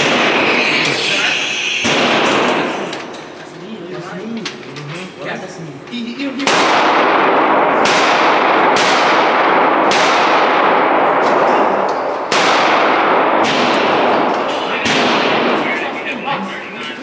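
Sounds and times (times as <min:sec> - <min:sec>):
gunshots echoing: 0:00.0 - 0:01.0, 0:01.8 - 0:03.1, 0:06.4 - 0:16.2.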